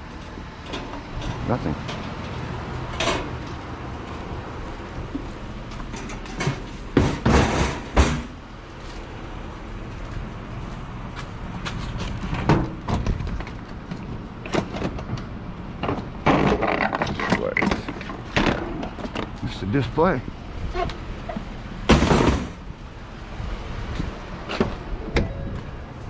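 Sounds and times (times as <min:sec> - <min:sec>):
junk clattering in a dumpster: 0:05.9 - 0:08.4, 0:14.4 - 0:19.4, 0:21.8 - 0:22.7.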